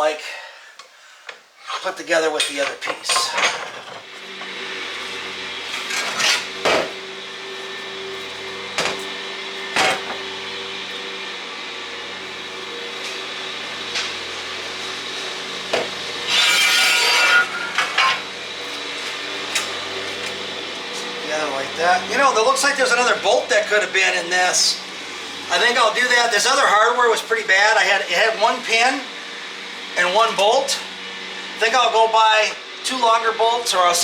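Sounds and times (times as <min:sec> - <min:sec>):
metal scraping on metal: 0:01.6 - 0:04.3, 0:05.0 - 0:06.5, 0:16.3 - 0:18.2.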